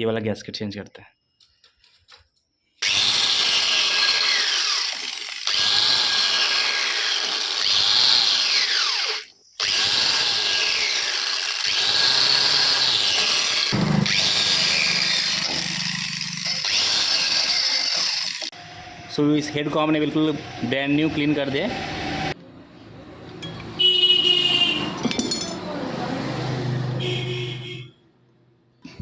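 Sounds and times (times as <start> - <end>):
handheld power tool running: 2.8 - 18.6.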